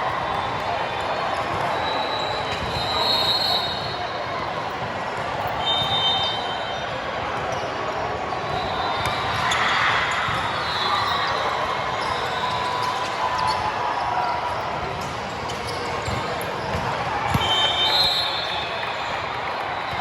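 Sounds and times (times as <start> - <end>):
crowd chatter: 0.0 - 20.0
sneaker squeaks on court: 15.0 - 19.1.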